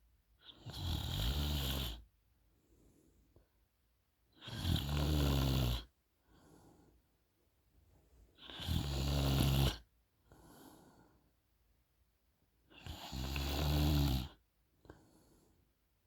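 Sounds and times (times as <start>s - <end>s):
woman snoring: 0.6s - 2.0s, 4.4s - 5.9s, 8.4s - 9.8s, 12.8s - 14.4s
soft breath: 2.5s - 3.6s, 6.2s - 7.2s, 10.2s - 11.4s, 14.8s - 15.8s.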